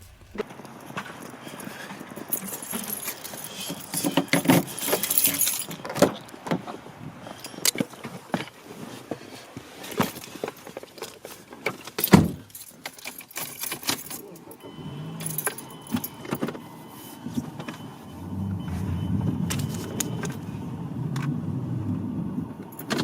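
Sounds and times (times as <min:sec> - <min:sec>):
bursts of hiss: 0:00.0 - 0:00.4
heavy thump: 0:00.0 - 0:00.4
rattling and clattering: 0:00.0 - 0:00.4.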